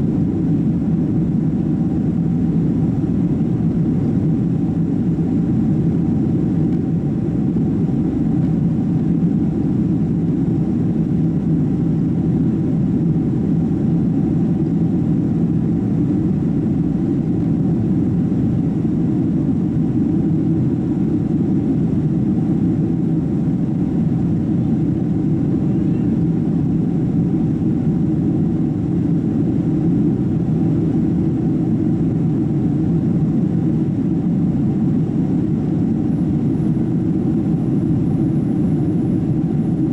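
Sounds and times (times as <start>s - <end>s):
faint steady hum: 0.0s - 39.9s
jet cabin rumble: 0.0s - 39.9s.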